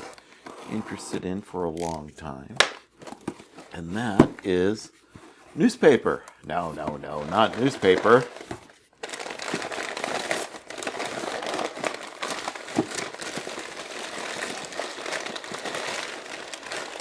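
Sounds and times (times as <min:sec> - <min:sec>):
packaging crinkling: 0:06.5 - 0:17.0.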